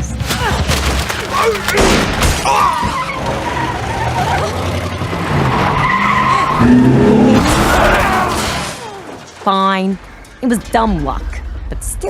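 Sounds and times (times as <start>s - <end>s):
car tyres squealing: 1.3s - 9.5s.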